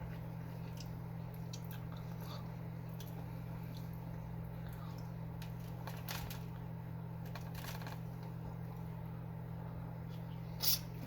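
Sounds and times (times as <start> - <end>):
person chewing: 0.0 - 5.2
steady low hum: 0.0 - 11.0
small clicks and crackles: 4.7 - 6.6, 7.2 - 8.4.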